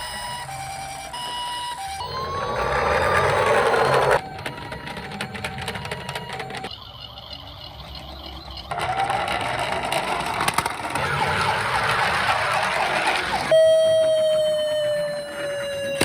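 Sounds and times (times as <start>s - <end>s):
ambulance siren: 0.0s - 16.0s.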